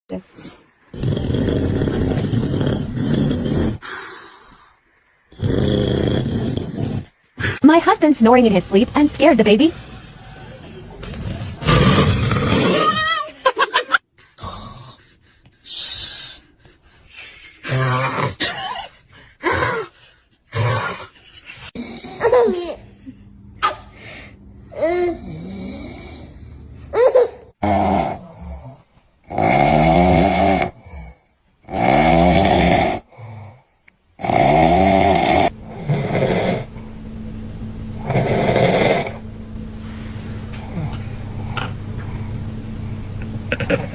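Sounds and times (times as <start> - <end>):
faint steady hum: 0.2 - 43.9
person snorting snores: 0.4 - 7.6, 9.6 - 13.0, 14.4 - 15.0, 17.6 - 18.4, 24.8 - 26.6, 27.6 - 36.8, 38.0 - 39.2, 39.8 - 42.2
person laughing: 12.6 - 14.0, 43.5 - 43.9.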